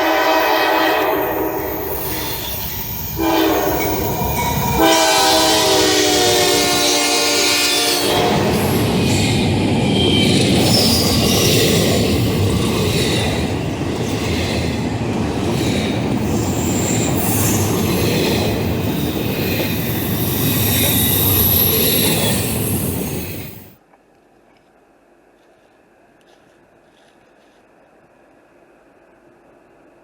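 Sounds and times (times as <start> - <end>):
train wheels rumbling on rail: 0.0 - 23.8
high-pitched wheel squeals: 1.1 - 11.8, 16.2 - 23.7.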